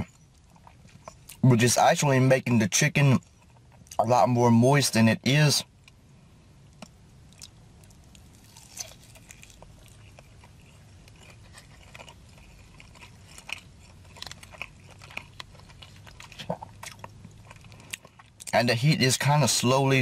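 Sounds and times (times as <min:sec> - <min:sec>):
person chewing food: 0:00.0 - 0:01.4, 0:03.2 - 0:04.0, 0:06.7 - 0:18.6.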